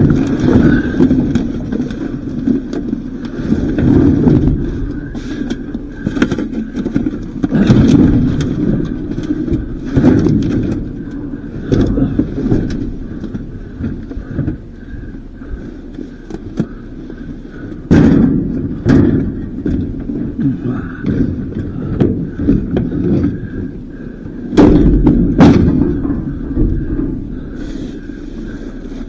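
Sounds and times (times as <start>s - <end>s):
objects knocking and thumping: 0.0s - 15.6s, 16.2s - 29.0s
rustling of handled trash: 0.0s - 29.0s
heavy thump: 3.3s - 15.2s, 17.5s - 23.7s, 24.3s - 29.0s.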